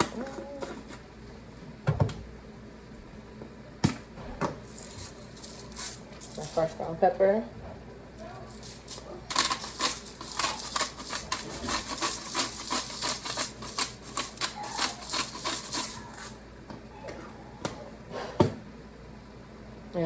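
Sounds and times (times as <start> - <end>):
pepper grinder clicking: 8.7 - 16.3.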